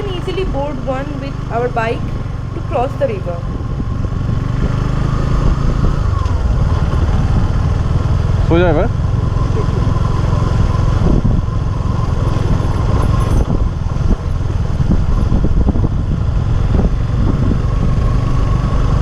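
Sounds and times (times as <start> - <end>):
motorcycle engine running: 0.0 - 19.0.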